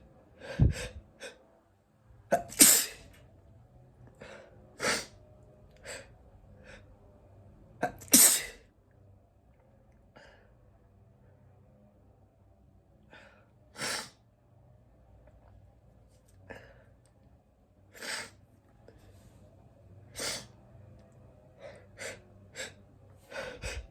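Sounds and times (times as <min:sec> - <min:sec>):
person sneezing: 0:02.3 - 0:03.1, 0:07.8 - 0:08.6.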